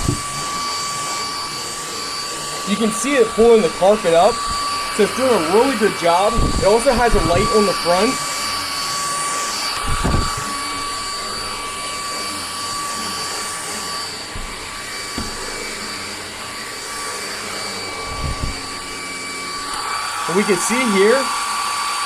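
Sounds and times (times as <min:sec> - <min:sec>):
dull knocks on steps: 0:00.0 - 0:00.5, 0:06.3 - 0:08.9, 0:09.8 - 0:13.5, 0:14.3 - 0:16.9
vacuum cleaner whine and airflow: 0:00.0 - 0:22.0.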